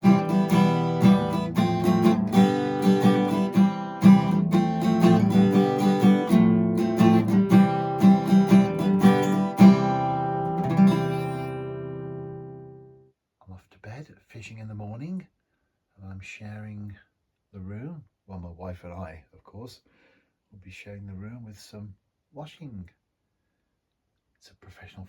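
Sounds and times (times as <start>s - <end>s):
acoustic guitar plucked and strummed: 0.0s - 13.0s.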